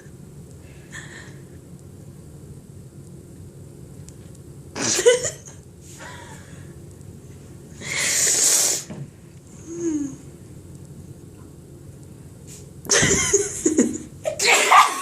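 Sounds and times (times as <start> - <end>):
person sneezing: 4.8 - 5.2.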